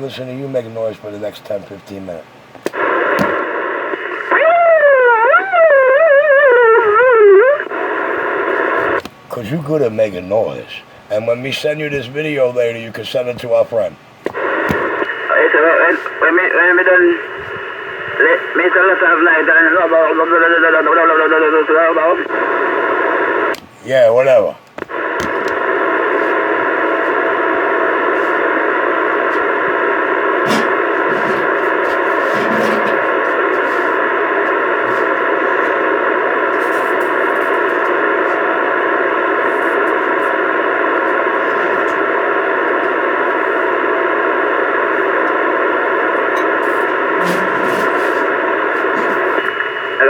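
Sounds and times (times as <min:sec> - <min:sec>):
rushing noise over radio speaker: 0:00.1 - 0:50.0.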